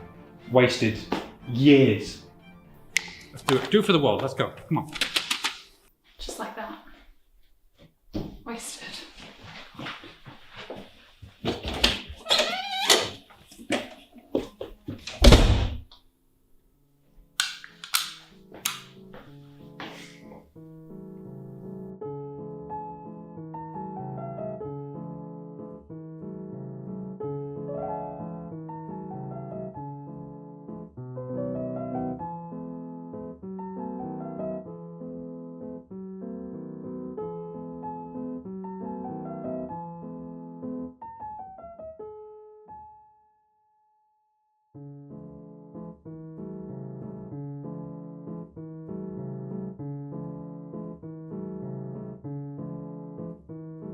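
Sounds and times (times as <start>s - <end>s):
slow piano chords: 0.0s - 4.0s, 18.4s - 43.2s, 44.8s - 53.9s.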